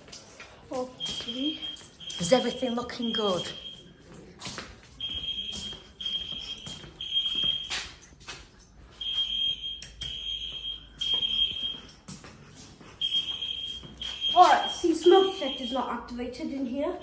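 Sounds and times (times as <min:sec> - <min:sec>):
fire alarm beeping: 0:00.7 - 0:08.2, 0:08.9 - 0:12.1, 0:12.9 - 0:17.0.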